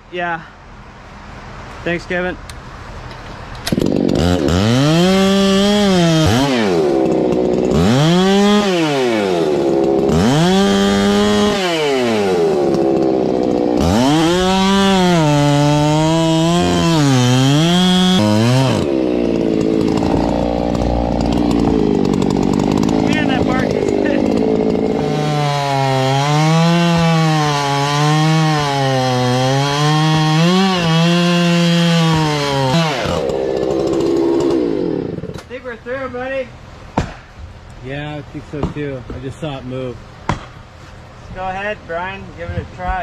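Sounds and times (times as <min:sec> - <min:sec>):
chainsaw engine revving: 0:03.6 - 0:35.6.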